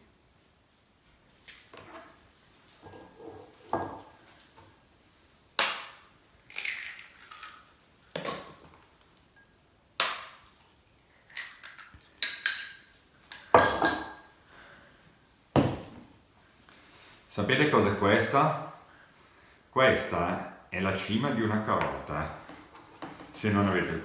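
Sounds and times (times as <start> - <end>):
dishes and utensils clinking: 11.7 - 14.4.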